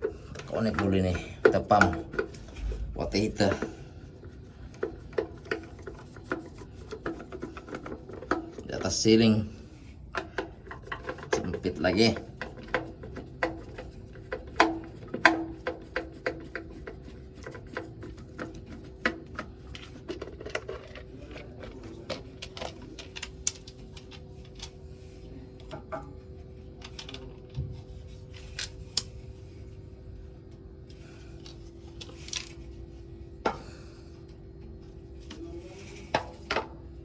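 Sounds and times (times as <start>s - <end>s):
faint steady hum: 0.0s - 37.0s
tools clicking and scraping: 10.1s - 29.9s.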